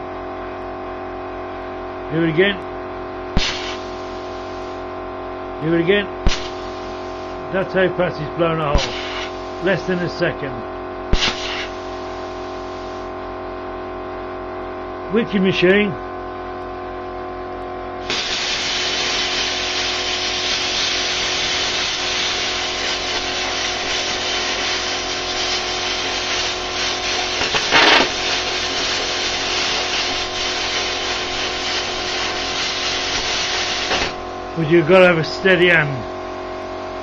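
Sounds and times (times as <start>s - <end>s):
generator humming: 0.0s - 37.0s
plasma cutter hissing: 3.4s - 4.8s, 6.2s - 7.4s, 8.7s - 10.2s, 11.1s - 13.1s, 18.0s - 34.2s.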